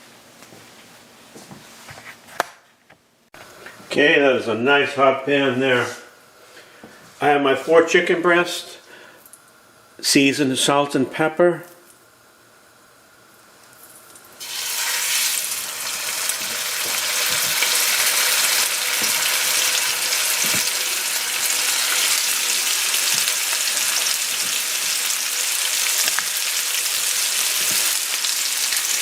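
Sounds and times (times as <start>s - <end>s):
meat sizzling in a hot pan: 14.4s - 29.0s.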